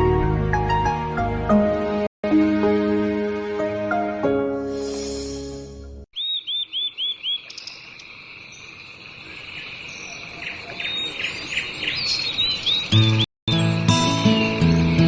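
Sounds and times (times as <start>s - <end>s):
bird chirping repeated notes: 6.1s - 8.7s, 9.5s - 15.0s.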